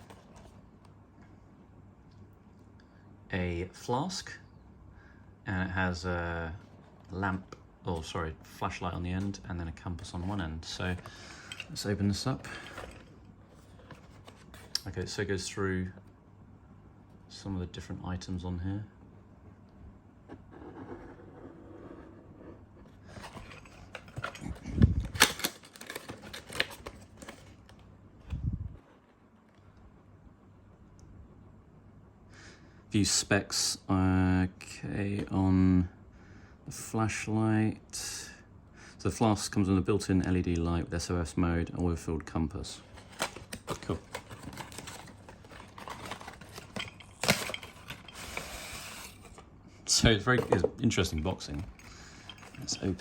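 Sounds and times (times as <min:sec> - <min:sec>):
cardboard and paper rustling: 0:00.0 - 0:00.6, 0:10.0 - 0:14.8, 0:23.0 - 0:29.1, 0:42.6 - 0:49.5, 0:50.1 - 0:53.0.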